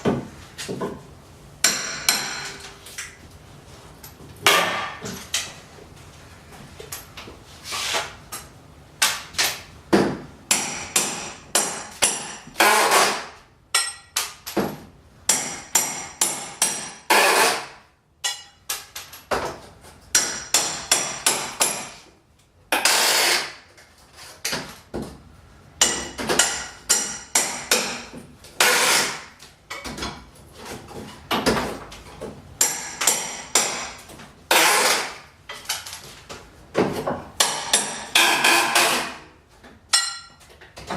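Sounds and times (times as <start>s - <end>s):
hammer striking nails: 1.6s - 2.6s, 4.4s - 5.1s, 9.0s - 19.5s, 20.1s - 22.0s, 22.7s - 23.6s, 25.8s - 30.1s, 32.6s - 35.2s, 36.8s - 39.2s.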